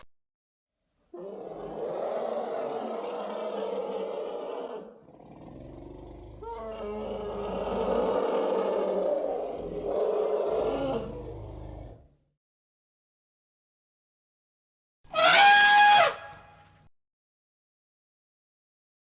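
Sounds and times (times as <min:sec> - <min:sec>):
large animal roaring: 0:01.2 - 0:12.1.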